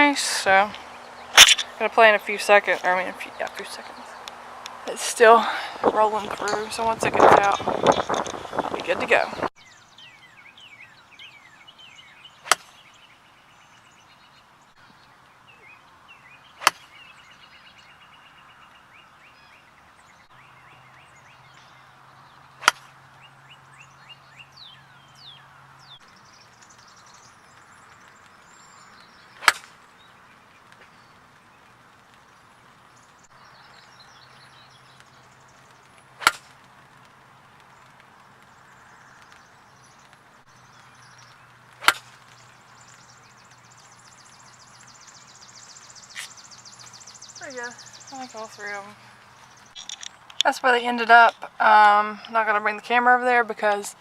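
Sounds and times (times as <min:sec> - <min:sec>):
birds chirping: 0:00.0 - 0:54.0
golf club striking ball: 0:01.3 - 0:01.8, 0:16.6 - 0:16.9, 0:22.6 - 0:22.9, 0:29.4 - 0:29.7, 0:41.8 - 0:42.3.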